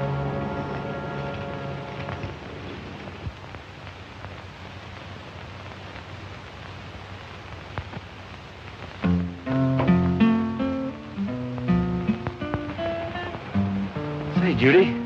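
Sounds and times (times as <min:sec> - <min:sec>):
acoustic guitar strumming: 0:00.0 - 0:02.5, 0:09.0 - 0:15.0
steady film hiss: 0:00.0 - 0:15.0
faint clicks: 0:11.0 - 0:14.3.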